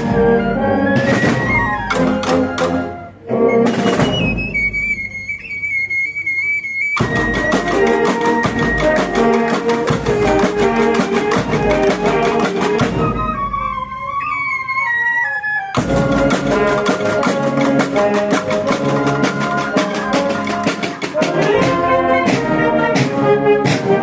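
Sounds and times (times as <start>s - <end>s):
wind band playing: 0.0s - 24.0s
rapid drum strokes: 7.0s - 13.2s, 15.8s - 24.0s.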